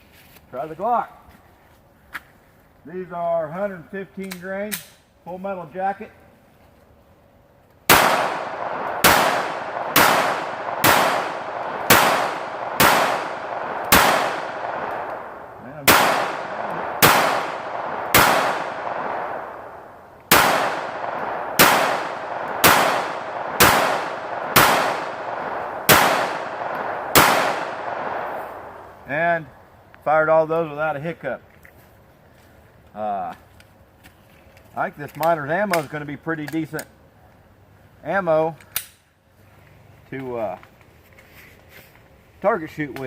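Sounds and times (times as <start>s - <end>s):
pistol shots with ringing tail: 7.9s - 29.0s.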